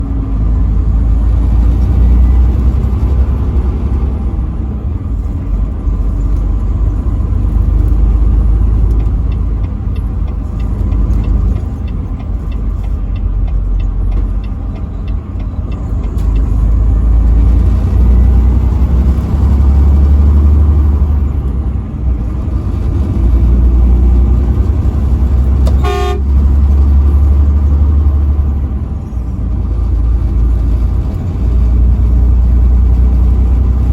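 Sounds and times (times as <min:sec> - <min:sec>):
truck rumbling on highway: 0:00.0 - 0:33.9
truck horn blast: 0:25.6 - 0:26.6.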